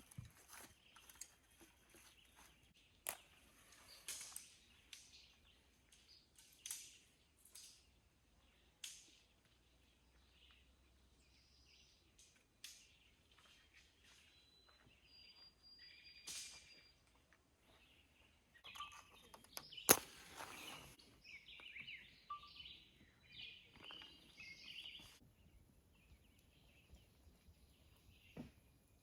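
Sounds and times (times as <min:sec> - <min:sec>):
birds singing and chirping: 0:07.7 - 0:28.5.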